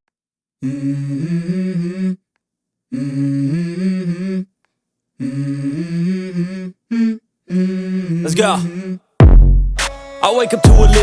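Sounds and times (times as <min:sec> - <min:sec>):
low voice humming melody: 0:00.6 - 0:02.2.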